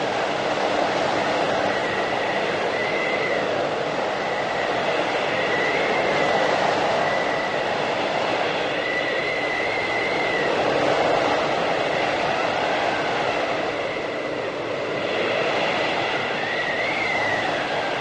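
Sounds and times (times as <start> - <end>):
blizzard wind howling: 0.0 - 18.0.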